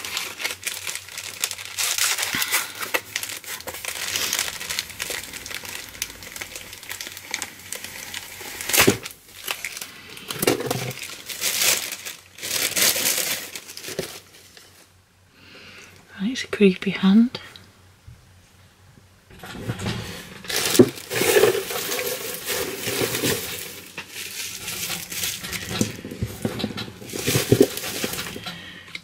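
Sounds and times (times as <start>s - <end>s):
packaging crinkling and rustling: 0.0s - 14.9s, 19.4s - 29.0s.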